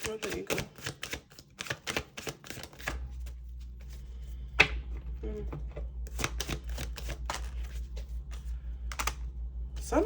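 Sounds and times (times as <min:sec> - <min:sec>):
cards shuffling and snapping: 0:00.0 - 0:03.4, 0:06.1 - 0:09.2
steady low hum: 0:02.6 - 0:10.0.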